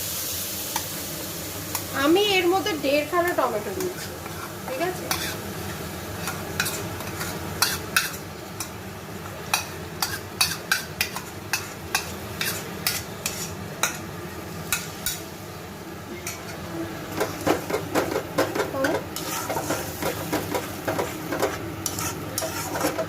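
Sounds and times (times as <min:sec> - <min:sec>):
food sizzling: 0:00.0 - 0:23.0
utensil scraping a frying pan: 0:03.6 - 0:08.7, 0:09.5 - 0:14.0, 0:16.2 - 0:23.0.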